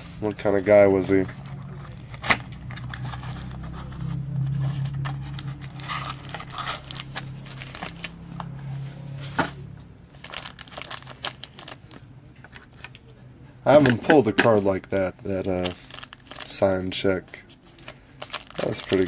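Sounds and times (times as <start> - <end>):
low steady hum: 0.0 - 19.0
cards clicking and rustling: 1.2 - 8.6, 17.4 - 19.0
card pack wrapper tearing: 5.0 - 8.5, 10.2 - 12.0, 15.4 - 16.6, 17.7 - 19.0.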